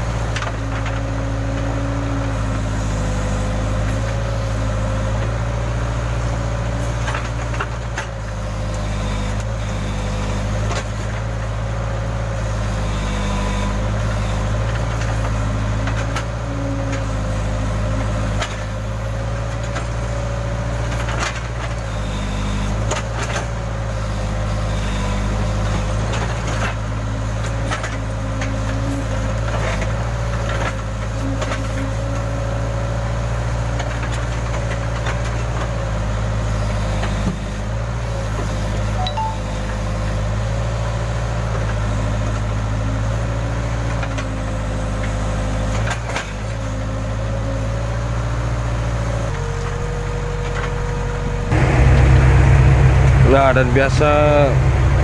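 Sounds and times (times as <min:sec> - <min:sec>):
diesel engine running: 0:48.1 - 0:55.0
wavering whine: 0:51.4 - 0:55.0.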